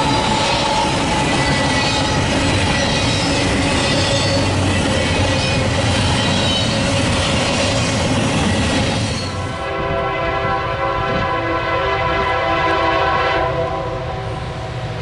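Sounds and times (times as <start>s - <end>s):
train wheels rumbling on rail: 0.0s - 15.0s
locomotive air horn: 9.2s - 14.8s.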